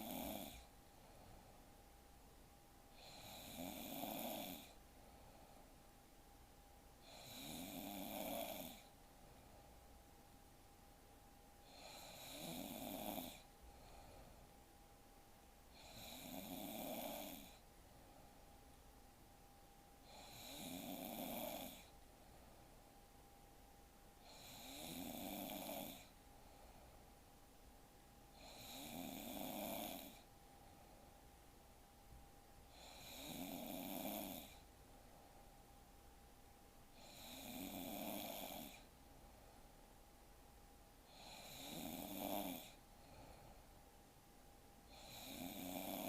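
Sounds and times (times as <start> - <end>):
woman snoring: 0.0 - 0.7, 2.9 - 4.8, 7.0 - 8.9, 11.6 - 13.5, 15.7 - 17.6, 20.0 - 21.9, 24.2 - 26.1, 28.3 - 30.3, 32.7 - 34.7, 36.9 - 38.9, 41.0 - 42.8, 44.9 - 46.0.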